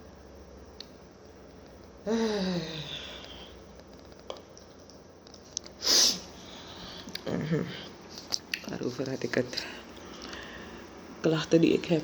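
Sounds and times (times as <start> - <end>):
person sighing: 2.0 - 3.5
sharp burst of breath: 5.8 - 7.0.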